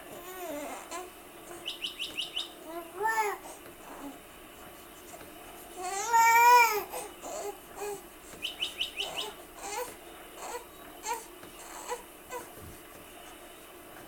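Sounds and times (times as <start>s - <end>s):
pet birds chirping: 1.5s - 3.3s, 8.3s - 12.5s.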